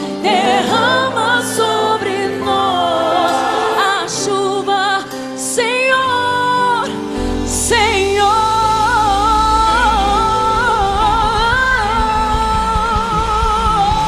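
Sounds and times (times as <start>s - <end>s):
woman singing with vibrato: 0.0s - 14.0s
deep bass note: 8.0s - 14.0s.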